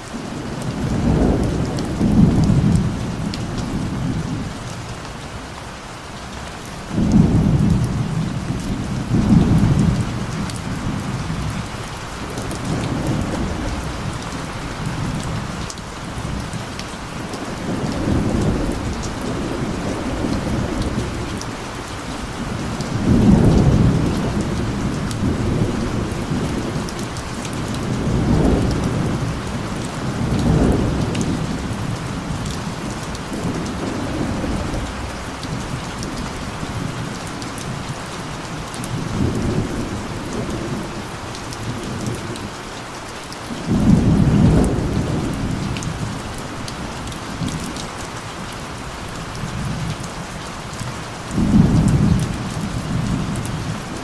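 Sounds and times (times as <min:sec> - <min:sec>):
steady rain: 0:00.0 - 0:54.0
thunder rumbling: 0:17.3 - 0:37.9, 0:43.6 - 0:47.8, 0:51.2 - 0:54.0.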